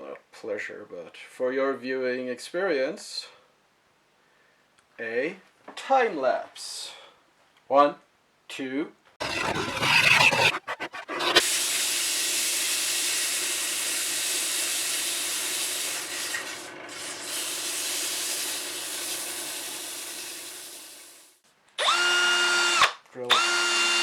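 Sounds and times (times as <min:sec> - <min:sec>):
wood turning on a lathe: 0:09.2 - 0:13.0.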